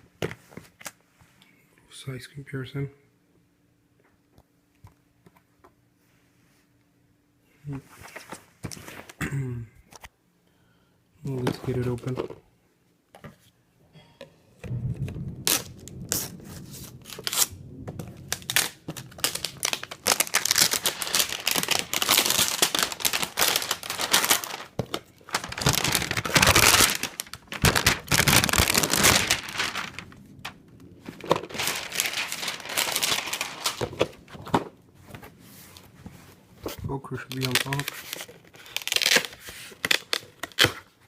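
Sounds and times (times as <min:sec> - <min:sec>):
plastic wrapping being torn: 0:15.5 - 0:17.5, 0:18.2 - 0:34.3, 0:37.2 - 0:40.9.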